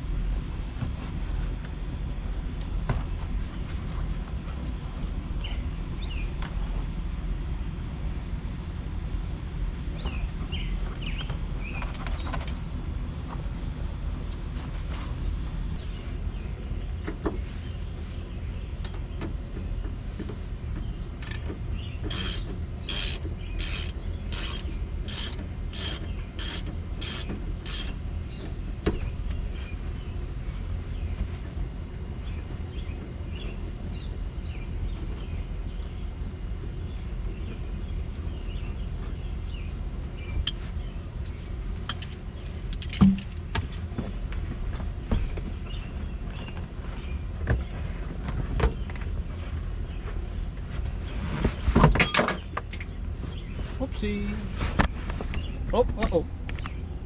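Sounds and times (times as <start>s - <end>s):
low steady rumble: 0.0s - 57.0s
ratchet wrench clicking: 22.1s - 28.0s.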